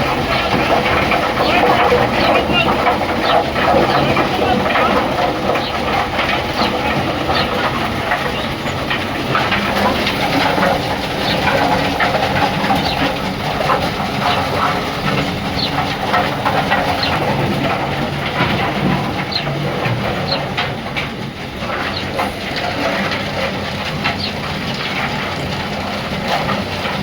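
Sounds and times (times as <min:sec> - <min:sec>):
sharp clicks and rattles: 0:00.0 - 0:27.0.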